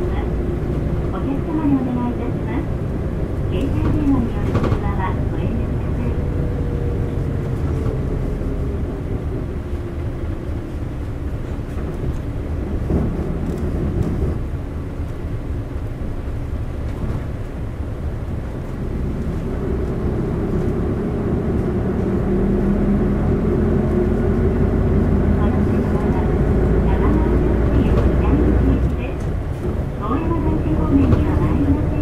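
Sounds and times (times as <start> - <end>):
bus diesel engine running: 0.0 - 32.0.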